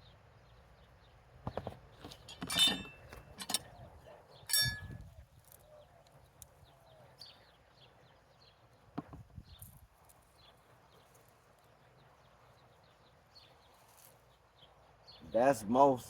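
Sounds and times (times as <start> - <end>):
small birds chirping: 0.0 - 16.0
metal tool digging in soil: 2.0 - 3.7, 4.5 - 5.1
sharp metal clinks: 2.3 - 3.6, 4.5 - 5.0.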